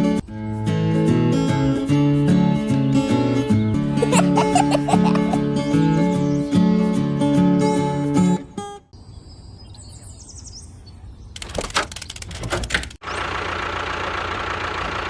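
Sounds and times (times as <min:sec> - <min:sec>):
engine running with thin whine: 0:13.0 - 0:15.0.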